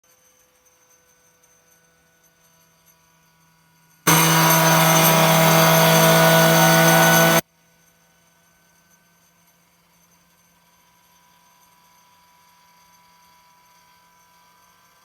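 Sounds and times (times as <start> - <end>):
router spindle cutting aluminum: 4.1 - 7.4.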